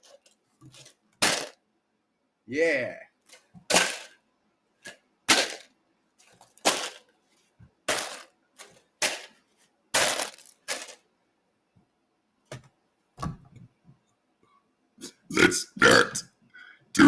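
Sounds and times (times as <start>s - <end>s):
paper packaging crinkling: 10.0s - 11.0s.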